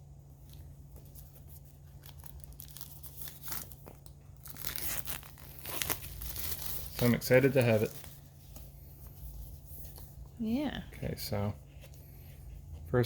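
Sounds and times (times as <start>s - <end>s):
plastic shrink wrap tearing: 1.8s - 8.0s.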